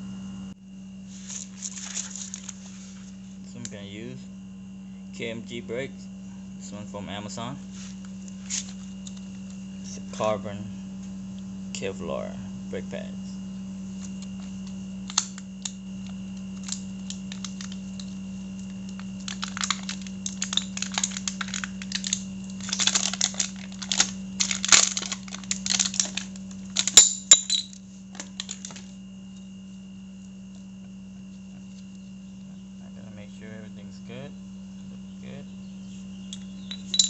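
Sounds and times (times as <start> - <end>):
packaging crinkling: 1.2 - 2.7, 16.0 - 27.0
brake pads clicking and clinking: 36.4 - 37.0.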